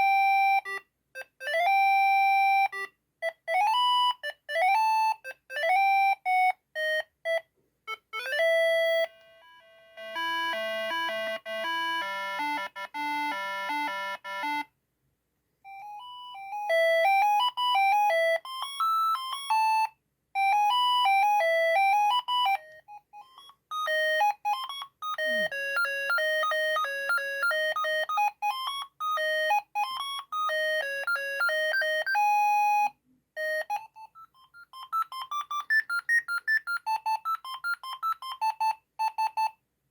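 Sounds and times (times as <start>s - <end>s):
phone ringtone beep melodies: 0.0s - 14.7s, 15.7s - 39.5s.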